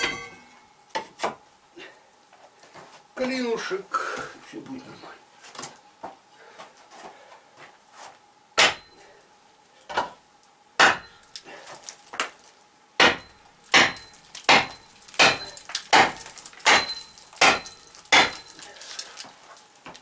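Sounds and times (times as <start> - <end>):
hammer striking wedge into wood: 8.6 - 8.9, 10.8 - 11.1, 13.0 - 18.4.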